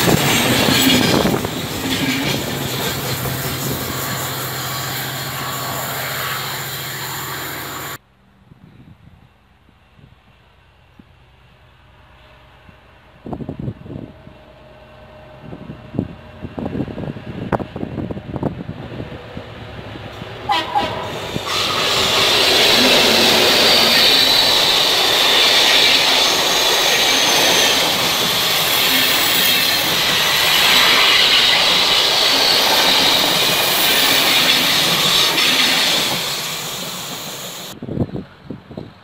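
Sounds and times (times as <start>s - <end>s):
train wheels passing: 0.0s - 8.0s, 10.4s - 37.8s
train horn blast: 20.4s - 26.2s.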